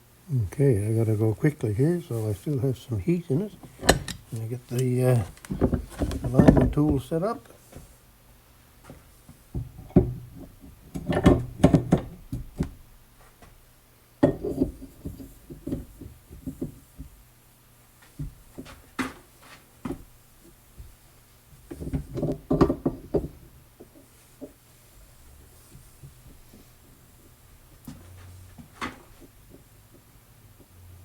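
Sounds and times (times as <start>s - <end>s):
metallic clanks and knocks: 3.6s - 4.4s, 5.2s - 7.1s.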